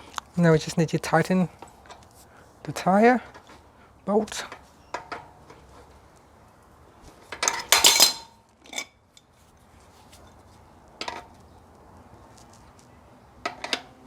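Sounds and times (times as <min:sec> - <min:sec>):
spanner clinking on metal: 0:07.4 - 0:08.9.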